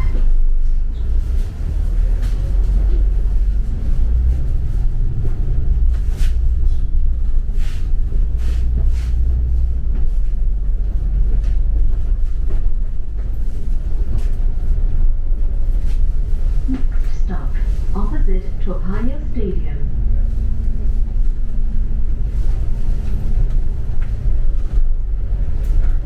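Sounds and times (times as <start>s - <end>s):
bus engine and road rumble: 0.0s - 26.0s.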